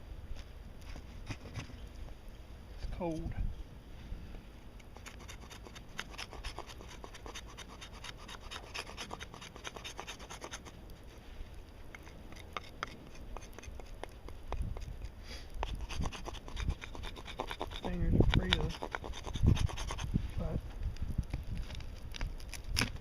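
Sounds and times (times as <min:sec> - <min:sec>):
knife scraping wood: 0:00.8 - 0:01.8, 0:05.0 - 0:10.8, 0:11.9 - 0:20.2.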